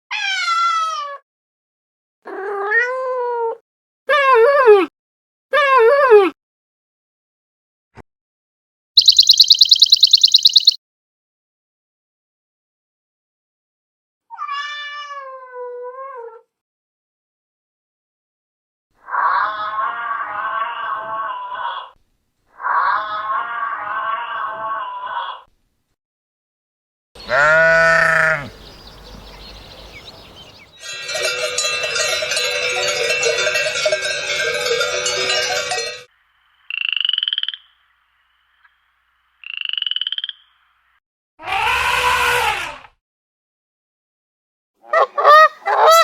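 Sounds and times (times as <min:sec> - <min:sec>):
cat meowing: 0:00.1 - 0:01.2
frog chorus: 0:09.0 - 0:10.8, 0:27.2 - 0:30.8, 0:36.5 - 0:38.8, 0:39.4 - 0:40.8
loud rising and falling animal call: 0:09.0 - 0:10.8, 0:41.4 - 0:42.9
short pulsing frog croaks: 0:09.0 - 0:10.8.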